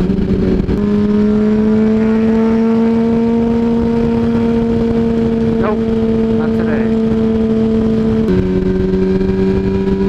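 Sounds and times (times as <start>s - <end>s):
loud wind noise: 0.0s - 10.0s
motorcycle engine at highway speed: 0.0s - 10.0s.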